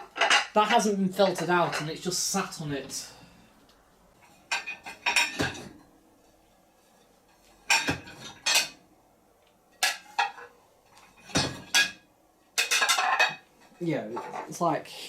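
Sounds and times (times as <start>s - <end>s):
plates clinking in dishwasher rack: 0.0s - 0.6s, 4.3s - 6.0s, 7.4s - 8.8s, 9.8s - 12.0s, 12.6s - 14.5s.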